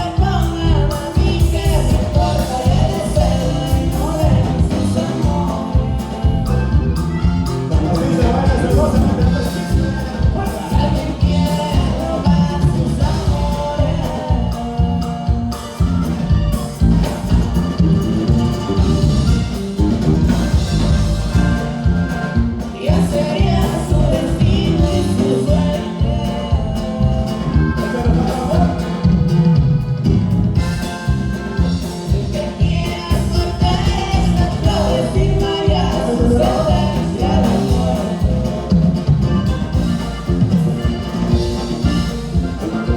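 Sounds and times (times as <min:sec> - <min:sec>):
person singing: 0:00.0 - 0:16.2, 0:21.3 - 0:29.6, 0:31.6 - 0:39.9
band playing live: 0:00.0 - 0:42.9
steady drum beat: 0:00.0 - 0:42.9.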